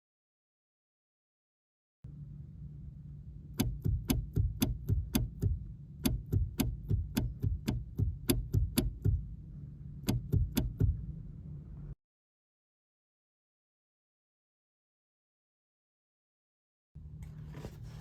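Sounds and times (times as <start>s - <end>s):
low steady hum: 2.1s - 12.0s, 17.0s - 18.0s
brake pedal clicking: 3.5s - 9.3s, 10.0s - 11.0s, 17.1s - 18.0s.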